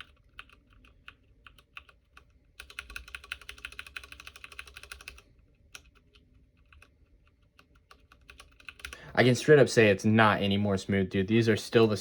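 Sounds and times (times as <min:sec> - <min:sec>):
mechanical keyboard keys clicking: 0:00.0 - 0:05.2, 0:07.8 - 0:09.0.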